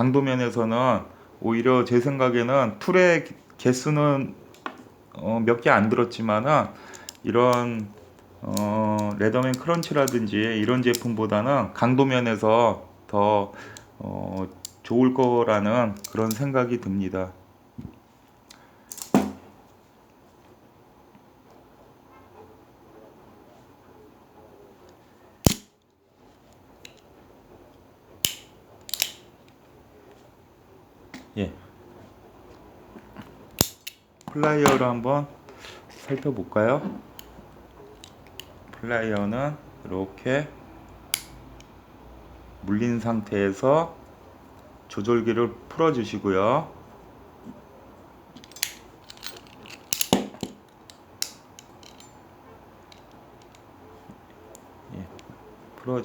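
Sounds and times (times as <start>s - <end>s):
locking pliers metallic clicks: 6.9s - 7.9s, 8.5s - 11.2s, 16.0s - 16.5s, 18.5s - 19.2s, 25.4s - 25.7s, 28.2s - 29.3s, 33.5s - 34.9s, 40.9s - 41.7s, 48.4s - 52.2s, 52.9s - 53.7s.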